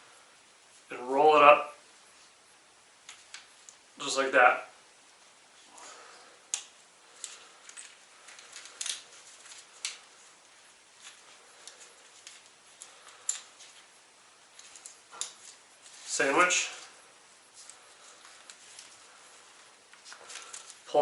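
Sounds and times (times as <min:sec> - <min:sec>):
strap webbing rustling: 0:05.0 - 0:21.0.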